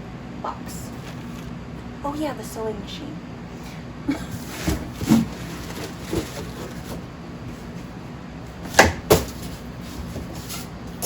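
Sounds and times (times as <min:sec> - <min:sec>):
cardboard box rustling: 0:04.4 - 0:07.8.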